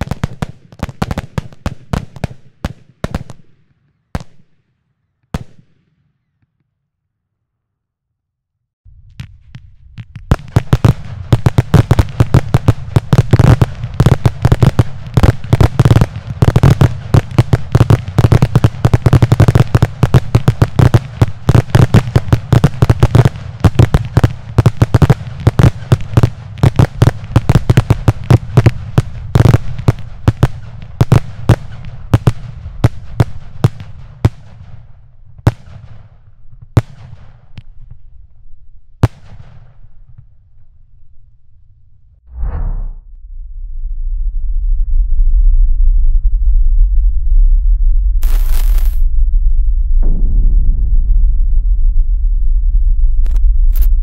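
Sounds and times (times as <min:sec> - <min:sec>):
fireworks firing sharp bangs: 0:00.0 - 0:04.7, 0:05.3 - 0:06.3, 0:09.0 - 0:38.0, 0:39.0 - 0:40.4, 0:48.2 - 0:49.0.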